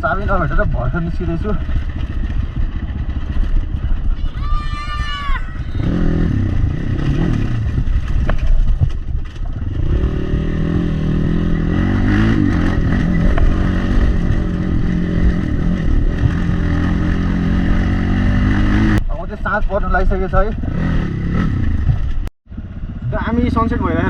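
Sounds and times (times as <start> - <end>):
motorcycle engine revving: 0.0 - 4.2, 5.6 - 24.0
clatter and scraping: 0.0 - 4.4, 6.1 - 17.5, 19.3 - 22.3.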